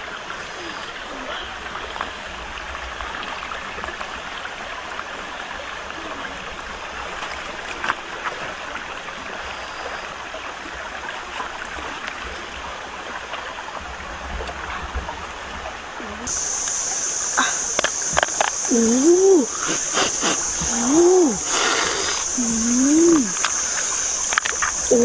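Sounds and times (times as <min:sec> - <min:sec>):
flowing water: 0:00.0 - 0:25.0
faint clicks: 0:23.1 - 0:25.0.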